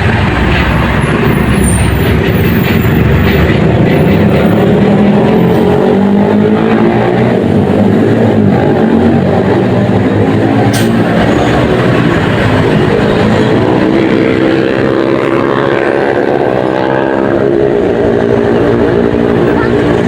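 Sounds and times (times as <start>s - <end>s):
engine and road noise: 0.0s - 20.0s.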